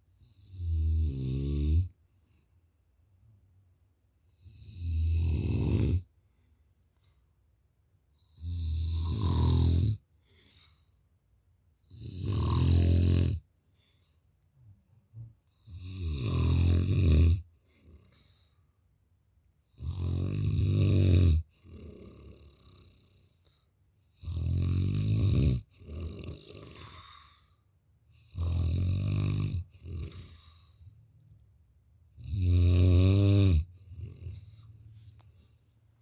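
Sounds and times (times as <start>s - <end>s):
person snoring loudly: 0.3s - 1.9s, 4.4s - 6.1s, 8.3s - 10.0s, 11.8s - 13.4s, 15.5s - 17.4s, 19.7s - 23.2s, 24.2s - 27.3s, 28.2s - 30.7s, 32.2s - 34.6s
soft breathing: 10.1s - 11.2s, 13.5s - 15.4s, 26.6s - 27.8s, 30.0s - 31.4s, 33.8s - 36.0s.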